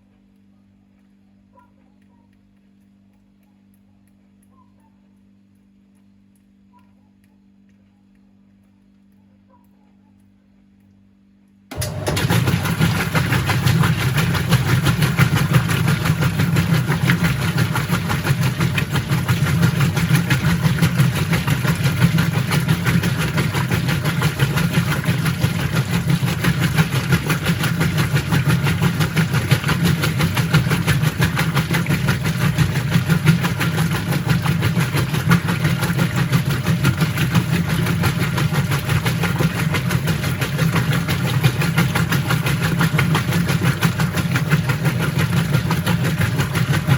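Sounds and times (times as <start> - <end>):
washing machine running: 11.6 - 46.9.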